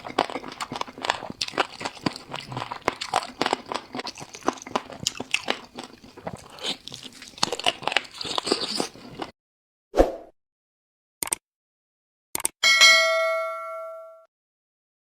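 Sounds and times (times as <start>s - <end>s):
crunchy biting and chewing: 0.0s - 9.3s.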